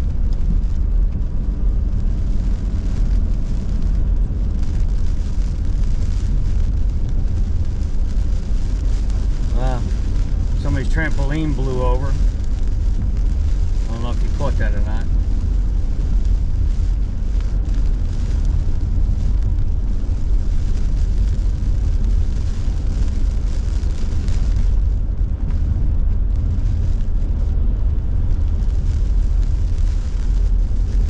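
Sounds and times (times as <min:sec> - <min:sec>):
rain hissing on car: 0:00.0 - 0:31.0
wind and road noise rumble: 0:00.0 - 0:31.0.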